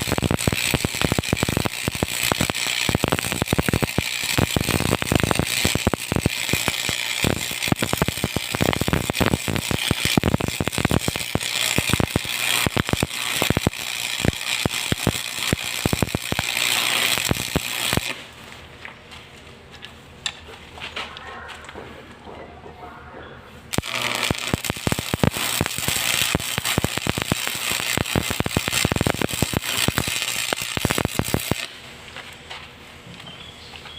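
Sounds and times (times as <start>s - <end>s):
welding arc crackling: 0.0s - 18.5s, 23.7s - 31.9s.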